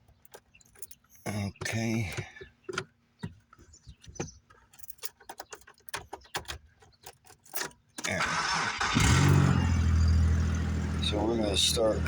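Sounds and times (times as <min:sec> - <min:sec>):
small metal items jingling: 0:00.2 - 0:01.2, 0:04.6 - 0:07.8.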